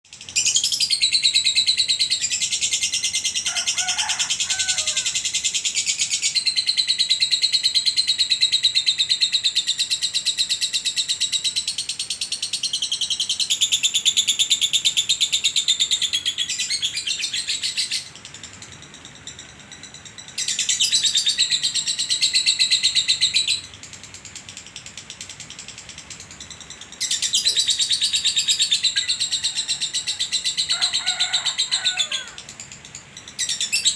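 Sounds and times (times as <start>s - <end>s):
lovebird shrill chattering trill: 15.9s - 33.9s.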